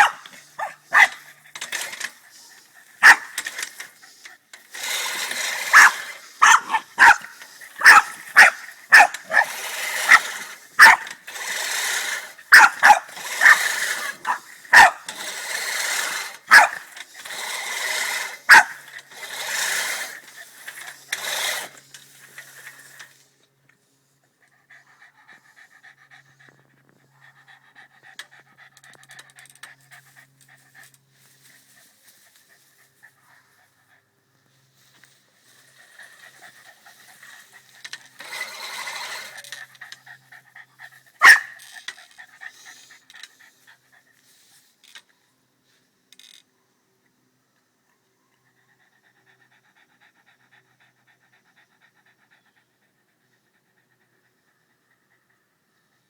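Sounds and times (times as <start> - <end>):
dog barking sharply: 0.0 - 1.2, 3.0 - 3.4, 5.7 - 9.5, 10.1 - 11.1, 12.5 - 13.7, 14.3 - 15.0, 16.5 - 16.8, 18.5 - 18.8, 41.2 - 41.6
lawnmower blades whirring: 0.0 - 23.7, 35.0 - 40.2, 41.2 - 43.4
dog panting: 48.6 - 56.0.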